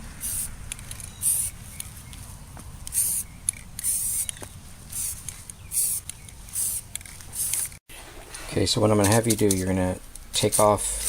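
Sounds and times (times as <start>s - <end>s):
spray paint can hissing: 0.2s - 0.5s, 1.2s - 1.6s, 2.9s - 7.8s.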